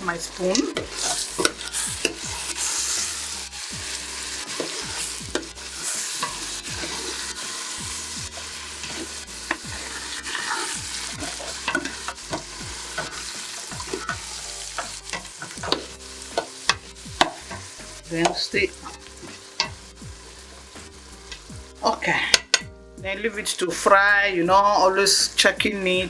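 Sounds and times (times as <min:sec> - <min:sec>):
spoon scraping pot bottom: 0:00.0 - 0:22.6
food sizzling in a pot: 0:00.0 - 0:26.0
spoon knocking against pot: 0:06.2 - 0:16.6.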